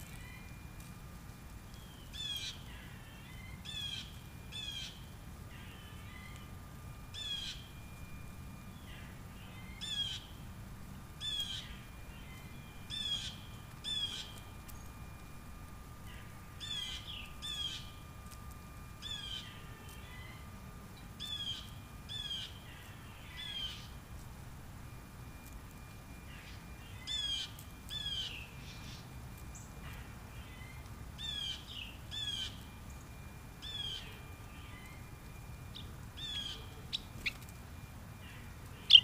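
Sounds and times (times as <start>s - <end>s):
low background hum: 0.0s - 39.0s
bird harsh calls: 8.8s - 10.3s, 12.9s - 14.4s, 16.2s - 17.9s, 30.0s - 32.6s, 36.2s - 37.4s, 38.3s - 39.0s.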